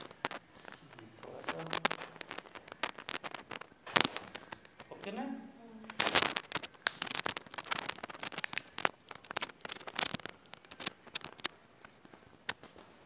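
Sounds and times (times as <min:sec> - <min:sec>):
clothing rustling on table: 0:00.0 - 0:05.1.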